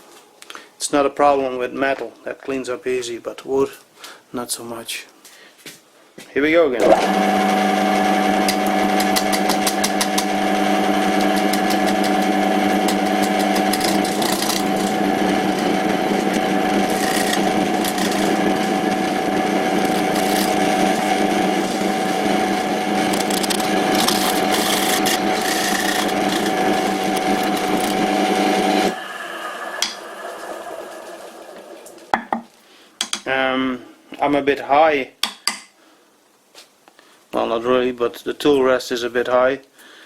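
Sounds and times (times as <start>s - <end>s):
lathe motor hum: 6.8s - 32.2s
gouge scraping spinning wood: 6.9s - 31.7s.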